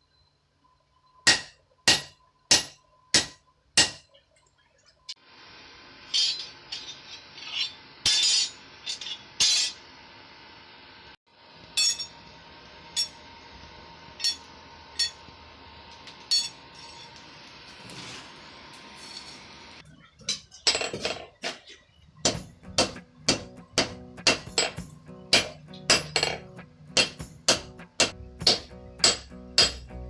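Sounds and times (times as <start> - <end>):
hammer striking steel on anvil: 1.3 - 4.1, 8.0 - 9.8, 11.8 - 12.2, 13.0 - 13.2, 14.2 - 15.3, 16.3 - 17.0, 22.2 - 30.0.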